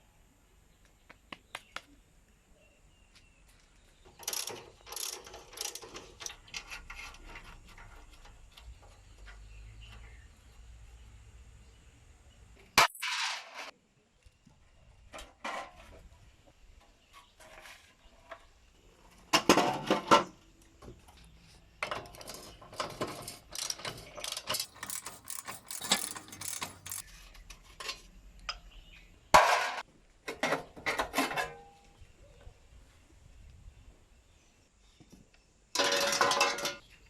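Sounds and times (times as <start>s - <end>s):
metal tools clinking and knocking: 22.1s - 27.0s.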